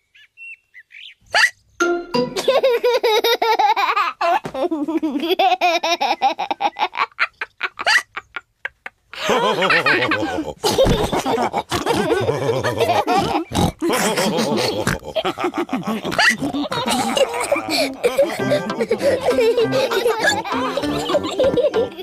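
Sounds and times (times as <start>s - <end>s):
cartoon pigs laughing with snorts: 2.4s - 22.0s.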